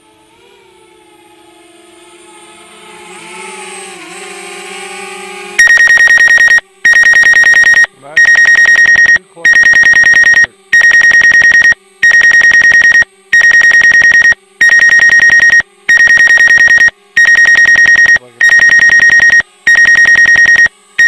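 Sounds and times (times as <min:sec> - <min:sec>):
high electronic buzzing beeps: 0:05.6 - 0:21.0.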